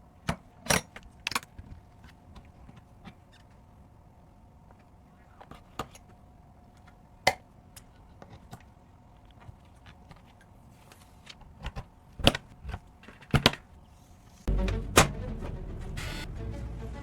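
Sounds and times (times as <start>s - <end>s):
music: 14.5s - 17.0s.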